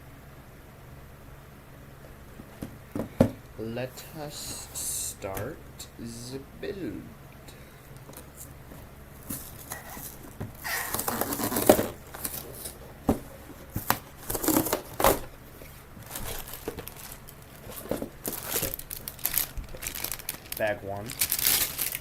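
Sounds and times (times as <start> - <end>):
plastic bags crinkling and tearing: 9.2 - 12.8, 13.8 - 22.0
cardboard box being opened: 9.2 - 15.3.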